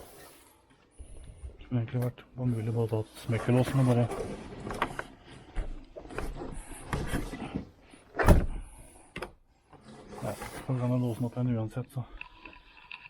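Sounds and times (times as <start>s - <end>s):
door banging shut: 8.2s - 8.6s.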